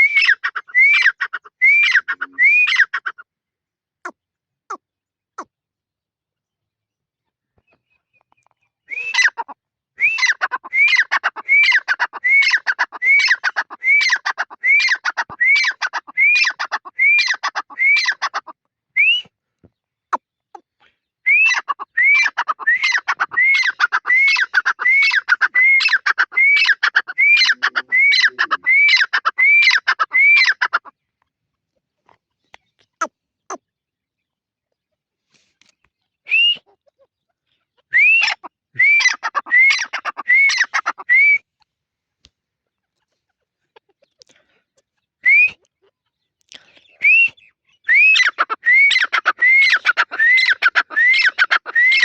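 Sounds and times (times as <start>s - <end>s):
francolin calling: 20.8s - 30.9s, 47.8s - 52.0s.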